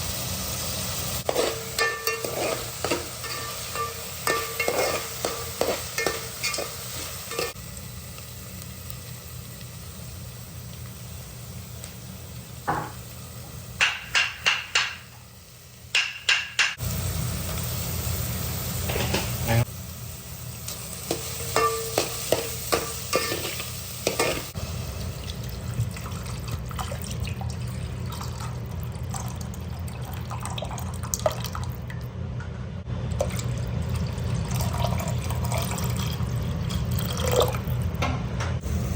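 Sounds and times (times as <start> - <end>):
spoon stirring and clinking in pot: 1.2 - 7.6, 21.1 - 24.4.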